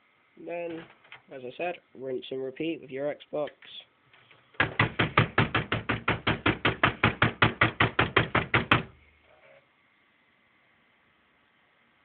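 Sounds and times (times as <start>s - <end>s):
hand knocking on console: 4.6s - 8.9s.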